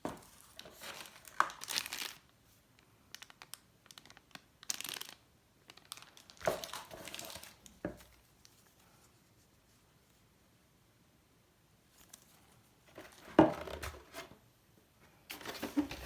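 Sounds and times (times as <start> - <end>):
packaging rustling: 0.0 - 2.3, 3.1 - 8.9, 15.3 - 16.0.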